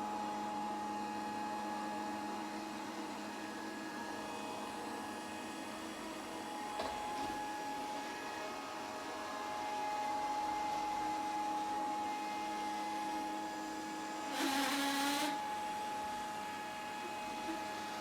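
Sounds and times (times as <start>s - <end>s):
robot vacuum motor whine: 14.2s - 15.8s.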